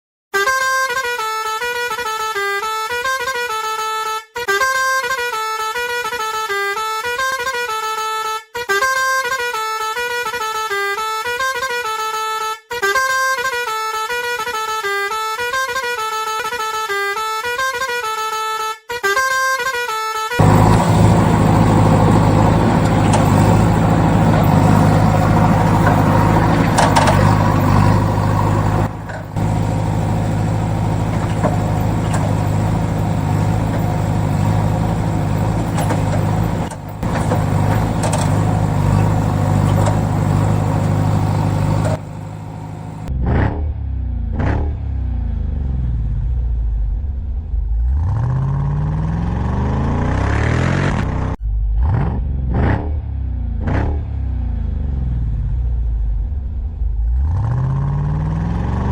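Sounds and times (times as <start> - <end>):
heavy vehicle engine revving: 20.4 - 58.9.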